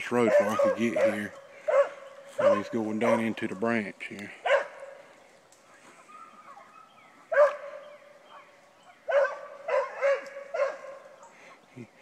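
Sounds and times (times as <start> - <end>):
dog baying: 0.2 - 2.8, 9.1 - 11.3.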